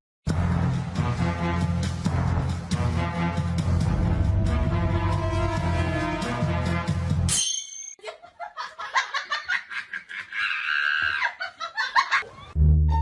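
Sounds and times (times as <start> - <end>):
background music: 0.3 - 7.5
person laughing: 8.0 - 12.6.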